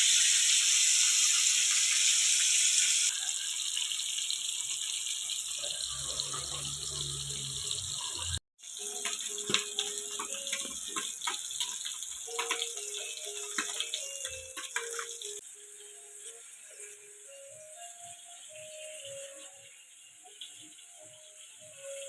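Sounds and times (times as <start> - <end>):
tap water running: 0.0 - 22.0
simple stepping melody: 12.3 - 16.4.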